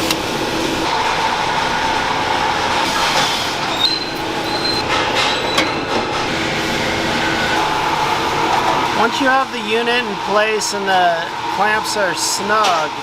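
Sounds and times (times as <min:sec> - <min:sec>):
mechanical shop hum: 0:00.0 - 0:13.0
brief high squeaks: 0:03.0 - 0:05.9.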